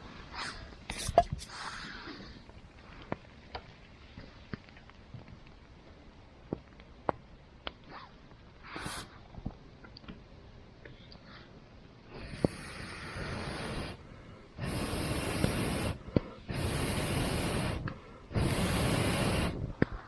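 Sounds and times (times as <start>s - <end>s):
breathy blowing on a fire: 0.0s - 3.3s, 7.9s - 9.3s, 10.9s - 20.0s
burning wood popping: 0.1s - 11.3s, 12.1s - 20.0s.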